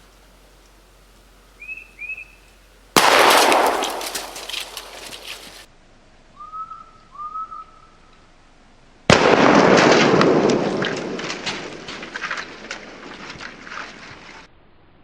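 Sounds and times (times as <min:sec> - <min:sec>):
shotgun blast with echo: 0:03.0 - 0:05.5, 0:09.1 - 0:13.0
short whistled notes: 0:06.4 - 0:08.0.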